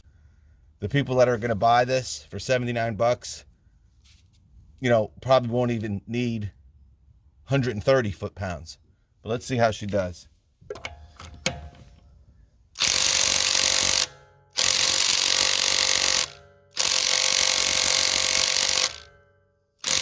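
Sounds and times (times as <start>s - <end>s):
impact wrench hammering: 12.8s - 20.0s.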